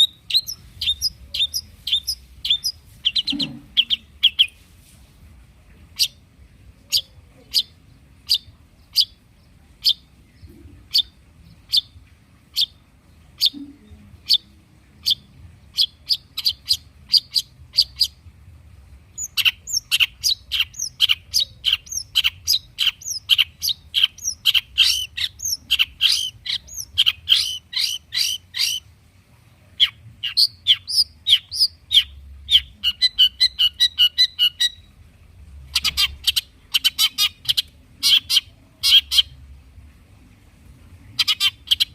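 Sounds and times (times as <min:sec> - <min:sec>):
bird calling rapid chattering notes: 0:00.0 - 0:04.5, 0:19.2 - 0:28.8, 0:35.7 - 0:39.3, 0:41.2 - 0:41.9.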